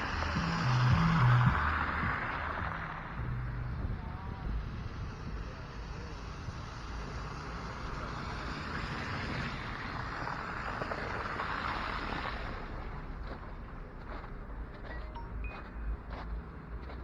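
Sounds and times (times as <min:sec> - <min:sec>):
wind rumble on microphone: 0:00.0 - 0:13.3.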